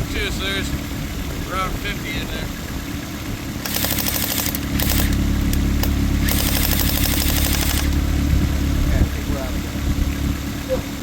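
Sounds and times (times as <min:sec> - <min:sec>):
car engine idling: 0:00.0 - 0:11.0
airsoft gun firing bursts: 0:03.6 - 0:08.0.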